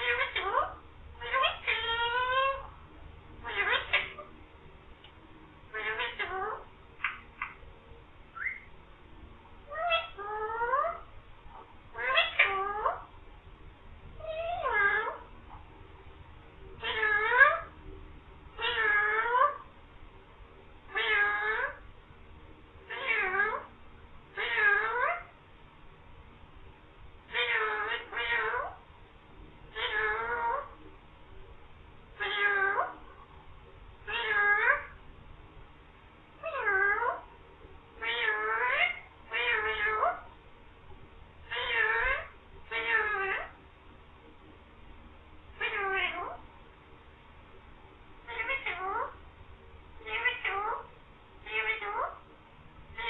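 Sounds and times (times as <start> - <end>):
parrot imitating a cat meow: 0.0 - 2.7, 3.4 - 4.3, 5.7 - 7.5, 9.7 - 11.1, 11.9 - 13.1, 14.2 - 15.3, 16.8 - 17.7, 18.6 - 19.7, 20.9 - 21.8, 22.9 - 23.7, 24.3 - 25.3, 27.3 - 28.8, 29.7 - 30.8, 32.2 - 33.0, 34.0 - 35.0, 36.4 - 37.3, 38.0 - 40.3, 41.4 - 43.6, 45.5 - 46.4, 48.3 - 49.2, 50.0 - 52.2.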